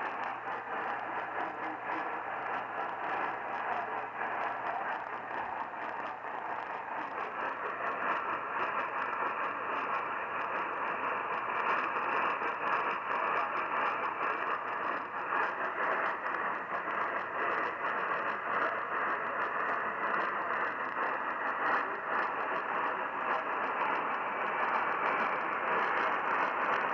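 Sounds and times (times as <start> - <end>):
muffled radio station audio: 0.0 - 26.9
radio static hiss: 0.0 - 26.9.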